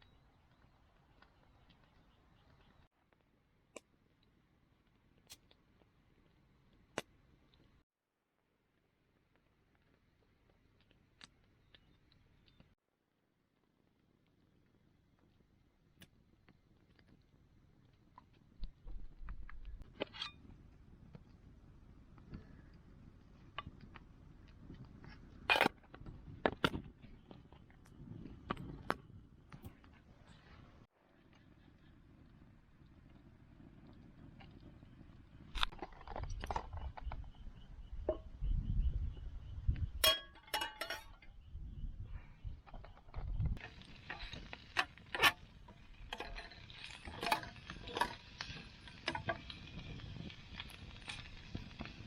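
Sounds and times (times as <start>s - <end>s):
campfire crackling and popping: 0.0s - 7.8s, 8.7s - 12.8s, 13.7s - 41.8s, 42.4s - 52.0s
small objects clicking and knocking: 35.4s - 38.3s, 40.0s - 41.4s, 42.5s - 52.0s.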